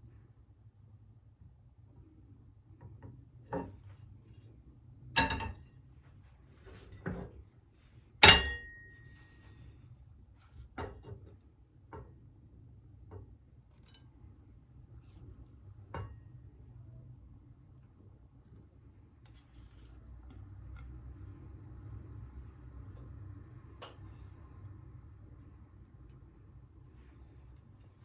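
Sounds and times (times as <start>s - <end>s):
dishes and glassware clinking: 5.2s - 5.7s, 8.2s - 9.2s.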